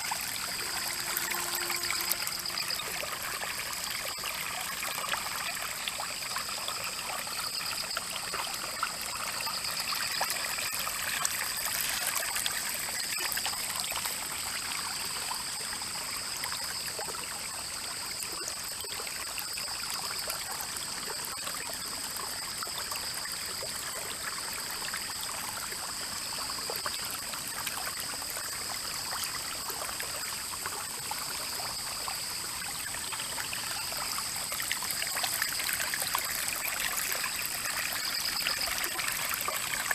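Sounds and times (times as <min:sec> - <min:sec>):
stream flowing and trickling: 0:00.0 - 0:39.9
thin high-pitched tones: 0:00.1 - 0:03.5.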